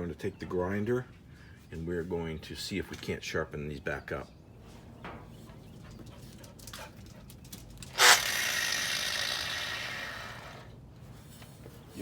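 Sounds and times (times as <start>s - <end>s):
angle grinder whirring: 7.9s - 10.7s.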